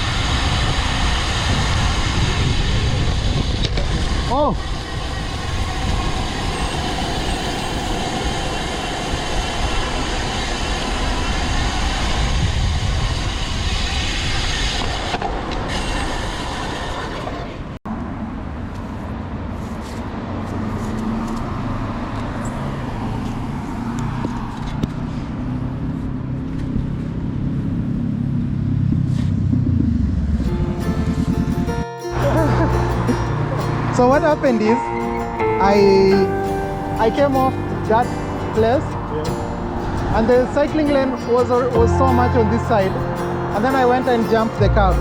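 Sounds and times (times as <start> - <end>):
passing traffic hum: 0.0 - 45.0
wind and road noise: 0.0 - 45.0.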